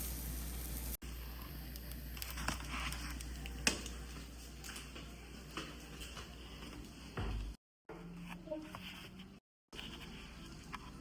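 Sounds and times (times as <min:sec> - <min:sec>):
meat sizzling in a frying pan: 0:00.0 - 0:01.0.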